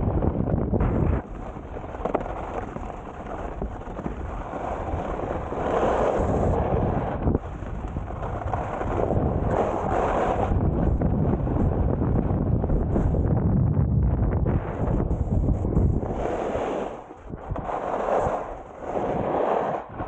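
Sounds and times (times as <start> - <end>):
wind rushing over microphone: 0.0 - 20.0
skis hissing on snow: 16.1 - 19.8.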